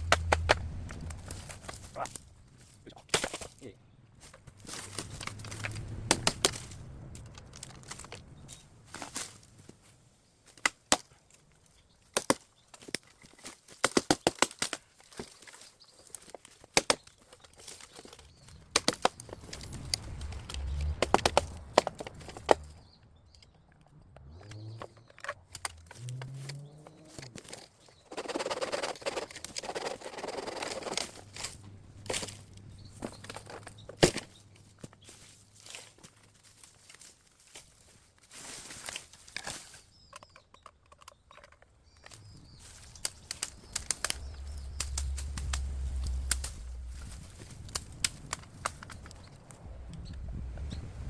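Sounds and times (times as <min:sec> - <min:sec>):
hatchet chopping bamboo: 0:00.0 - 0:00.6, 0:12.1 - 0:13.1, 0:13.7 - 0:15.3, 0:16.6 - 0:17.3
rasping rustling noise: 0:24.2 - 0:49.9.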